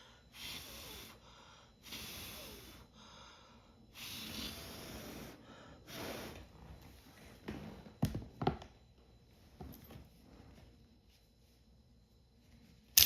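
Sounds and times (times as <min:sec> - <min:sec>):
person breathing out: 0:00.0 - 0:06.4.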